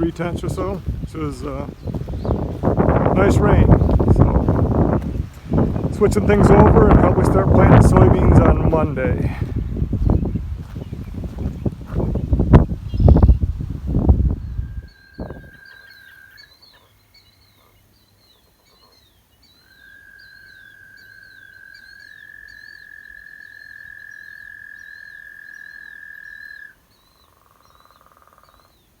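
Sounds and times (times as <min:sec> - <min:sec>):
birds chirping faintly: 0:00.0 - 0:29.0
frog trilling: 0:14.5 - 0:17.0, 0:19.6 - 0:28.8.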